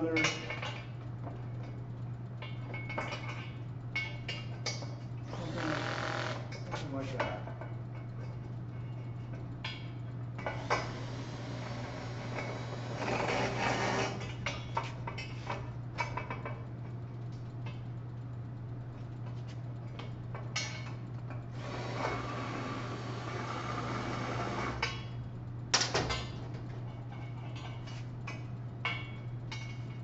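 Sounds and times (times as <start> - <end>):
steady low hum: 0.0 - 30.0.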